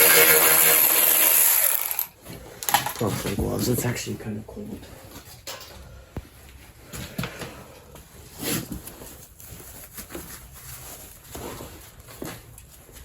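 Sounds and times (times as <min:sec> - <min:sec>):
work gloves rustling: 0:06.2 - 0:13.0.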